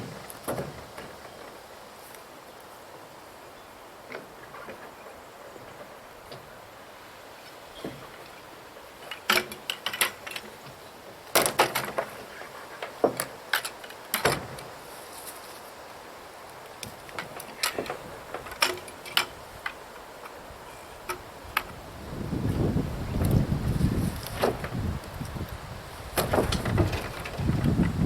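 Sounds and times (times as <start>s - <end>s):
sharp knocks and clatters: 26.2s - 28.0s.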